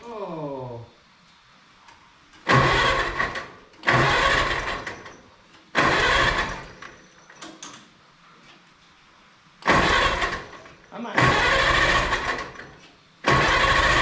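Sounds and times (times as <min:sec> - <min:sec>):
engine cranking by starter: 0:02.4 - 0:07.9, 0:09.6 - 0:14.0.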